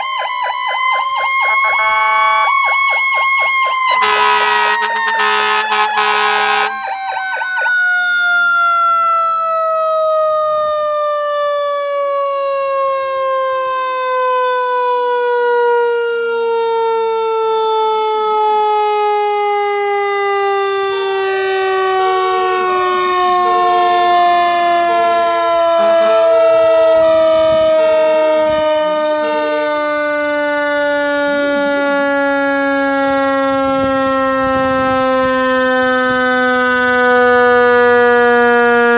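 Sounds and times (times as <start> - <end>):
mechanical siren winding down: 0.0 - 9.6
air horns: 1.5 - 2.6, 3.8 - 7.0, 24.8 - 26.6.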